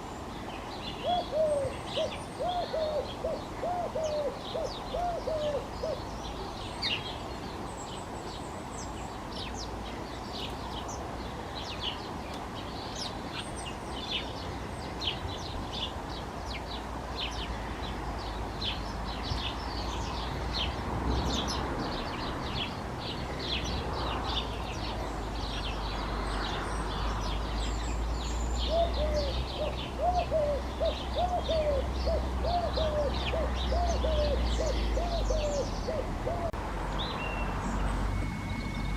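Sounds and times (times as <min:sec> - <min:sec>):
sparrows chirping: 0:00.0 - 0:38.9
dove cooing: 0:01.0 - 0:06.1, 0:28.7 - 0:36.6.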